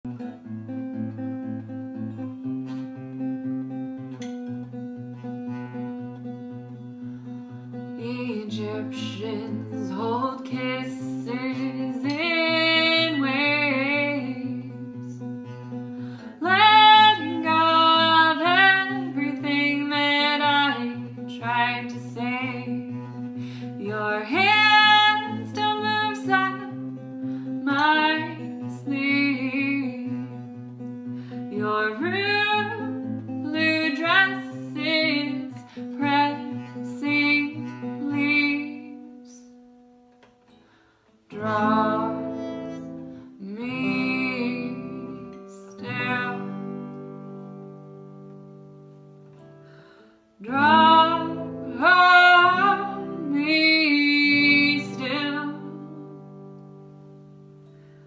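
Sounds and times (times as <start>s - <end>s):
acoustic guitar picking: 0.1s - 58.0s
woman singing: 7.8s - 39.6s, 41.3s - 47.8s, 50.4s - 56.8s.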